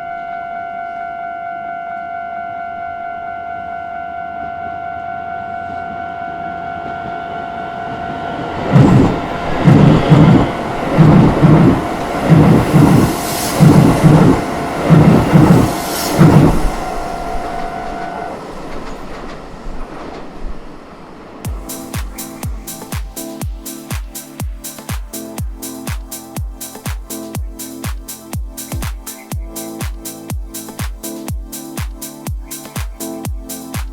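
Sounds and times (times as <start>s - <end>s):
train wheels clattering over rail joints: 8.6s - 22.3s.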